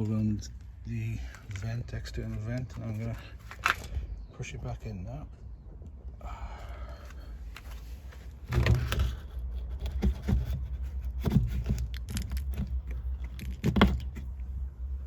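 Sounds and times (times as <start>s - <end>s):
knocks and scrapes on a wall vent: 8.1s - 14.4s.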